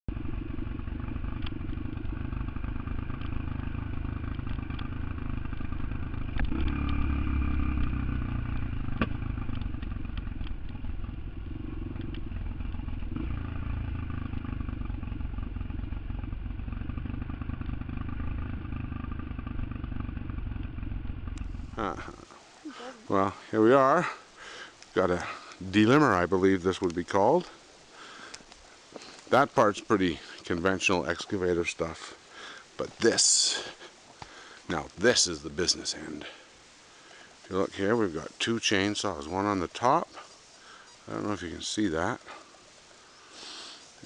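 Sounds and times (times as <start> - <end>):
engine running: 0.0 - 27.6.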